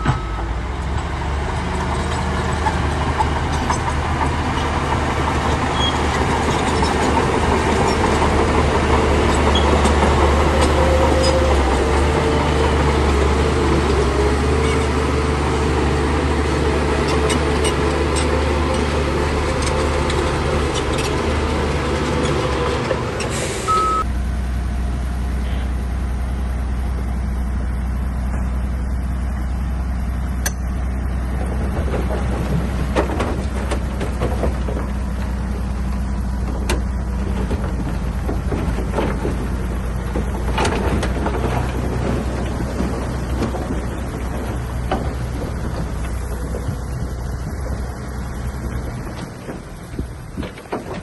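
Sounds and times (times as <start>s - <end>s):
diesel engine droning: 0.0s - 51.0s.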